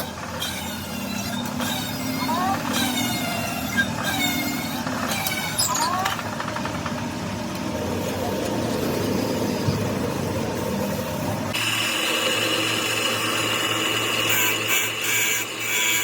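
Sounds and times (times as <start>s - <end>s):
power tool motor whining: 0.0s - 7.0s
workshop machine noise: 0.0s - 16.0s.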